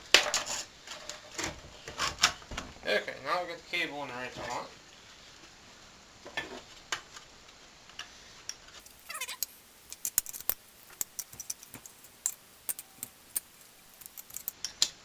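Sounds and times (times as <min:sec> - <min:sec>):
falling squeak: 0:08.8 - 0:09.6
tools and metal parts clicking: 0:08.8 - 0:14.8.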